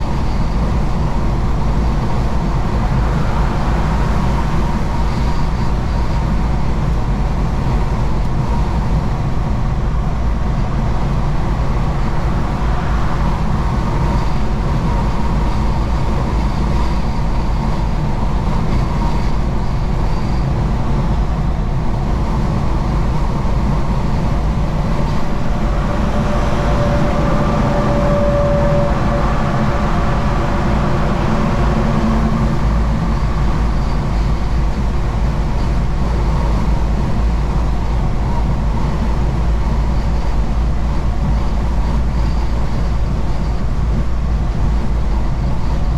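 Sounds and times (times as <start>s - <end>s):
truck engine and road rumble: 0.0s - 45.9s
thin rising tone: 24.2s - 34.0s.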